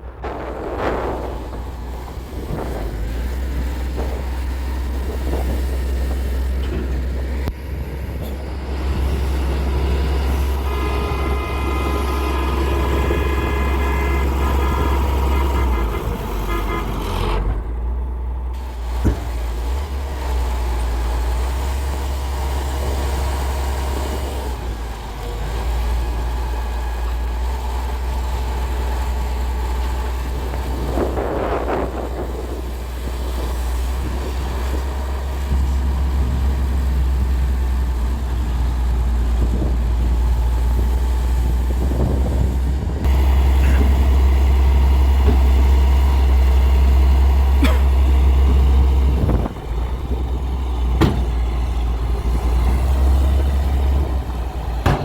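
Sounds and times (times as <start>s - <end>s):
diesel machinery engine rumbling: 0.0s - 55.0s
horn-like tone: 10.6s - 17.4s.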